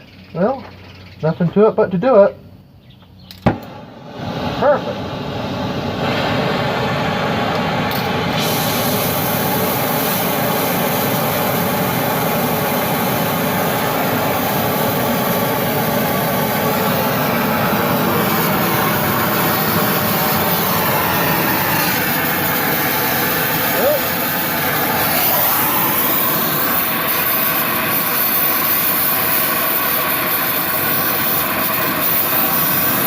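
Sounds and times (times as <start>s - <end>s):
gas torch flame rushing: 3.5s - 33.0s.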